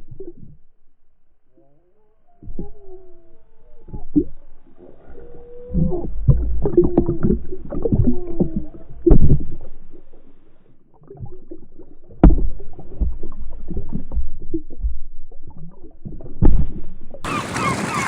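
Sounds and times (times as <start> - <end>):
muffled water splashing: 0.0 - 18.0
muffled seagull calls: 1.6 - 6.1, 17.3 - 18.0
sharp knocks and low thumps: 2.4 - 10.4, 11.0 - 17.3.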